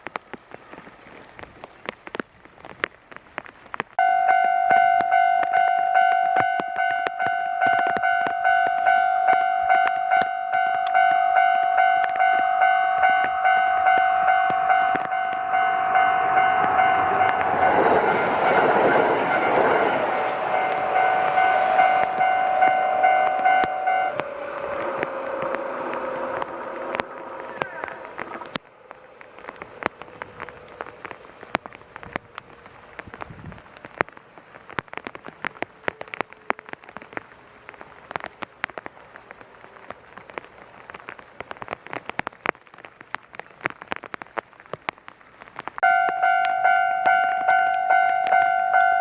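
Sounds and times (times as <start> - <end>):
faint irregular ticking: 2.8 - 49.0
level crossing warning bell: 4.0 - 24.3, 45.8 - 49.0
electric train passing: 4.0 - 31.4, 45.8 - 49.0.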